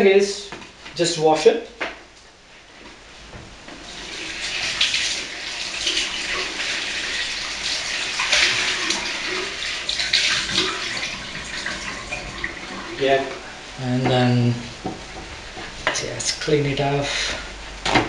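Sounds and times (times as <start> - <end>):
rice container being rinsed: 3.8 - 13.4
water running from tap: 3.8 - 13.4.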